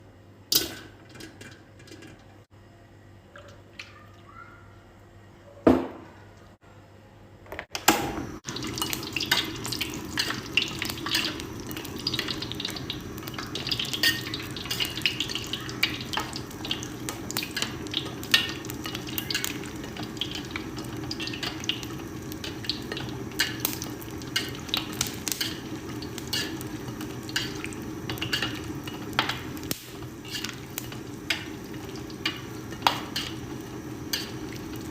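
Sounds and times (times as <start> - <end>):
popcorn popping: 0.5 - 2.4, 7.7 - 34.9
oil sizzling in a pan: 8.2 - 34.9.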